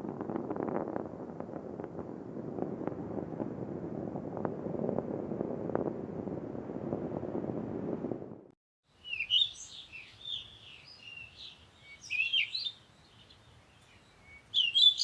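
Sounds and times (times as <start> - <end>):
rocket engines roaring and crackling: 0.0 - 8.4.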